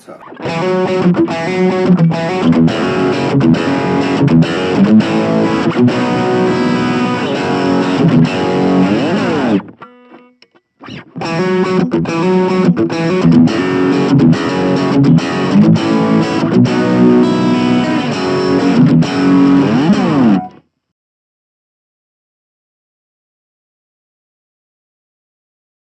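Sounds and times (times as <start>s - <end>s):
distorted electric guitar: 0.0s - 20.6s.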